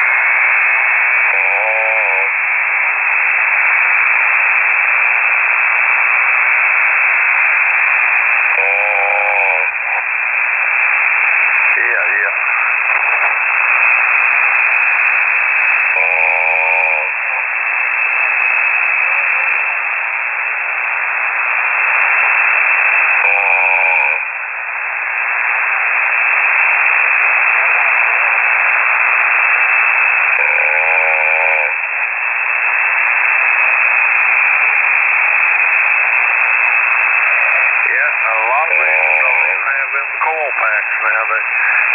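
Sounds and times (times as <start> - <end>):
person snoring over radio: 0.0 - 3.4, 8.2 - 10.8, 11.5 - 13.8, 14.6 - 19.9, 21.8 - 24.3, 26.9 - 28.5, 29.1 - 31.9, 36.2 - 41.9
radio signal hiss: 0.0 - 41.9.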